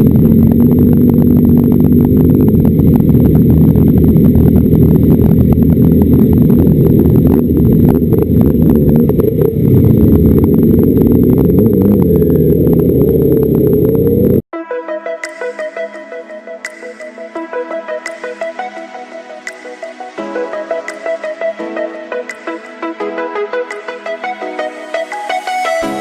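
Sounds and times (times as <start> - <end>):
wind buffeting microphone: 0.0 - 14.3
motorcycle engine running: 0.0 - 14.5.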